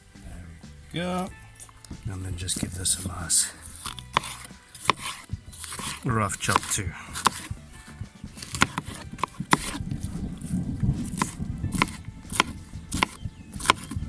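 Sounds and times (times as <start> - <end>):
knife chopping on cutting board: 3.8 - 9.8, 11.0 - 14.0
low rumble: 9.8 - 14.0.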